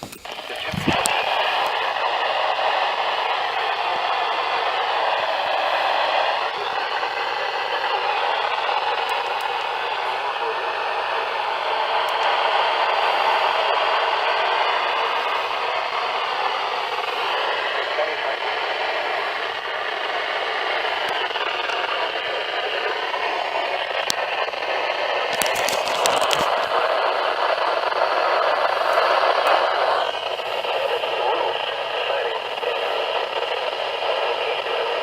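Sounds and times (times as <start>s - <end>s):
sharp crackling clicks: 0.0s - 1.8s, 25.2s - 26.8s
radio static hiss: 0.0s - 35.0s
weak broadcast voice: 0.2s - 35.0s.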